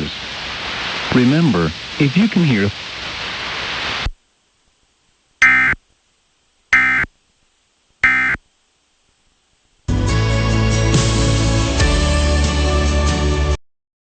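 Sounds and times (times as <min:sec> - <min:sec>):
radio static hiss: 0:00.0 - 0:09.8
buzzy digital data bursts: 0:05.4 - 0:05.8, 0:06.7 - 0:07.1, 0:08.0 - 0:08.4.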